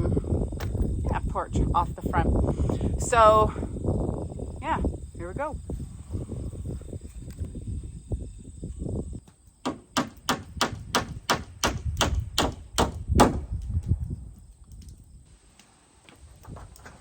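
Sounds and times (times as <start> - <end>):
hammer striking nail into wood: 9.6 - 13.5.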